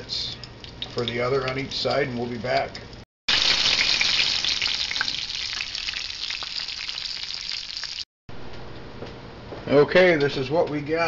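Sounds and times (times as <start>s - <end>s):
chicken frying in oil: 0.0s - 8.1s.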